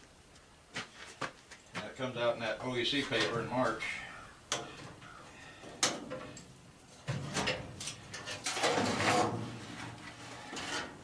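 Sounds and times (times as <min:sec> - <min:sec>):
metal scraping and rattling: 0:05.8 - 0:11.0.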